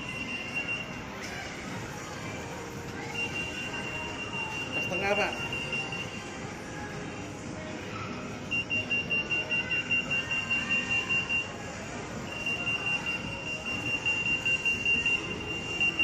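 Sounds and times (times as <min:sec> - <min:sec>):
security gate alarm beeping: 0:00.0 - 0:01.0, 0:03.0 - 0:06.3, 0:08.5 - 0:16.0.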